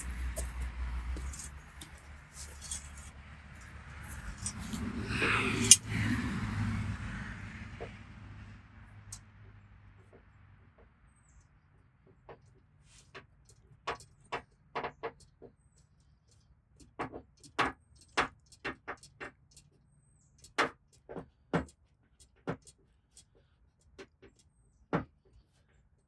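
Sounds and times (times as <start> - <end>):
tool tapping sheet metal: 4.1 - 5.8.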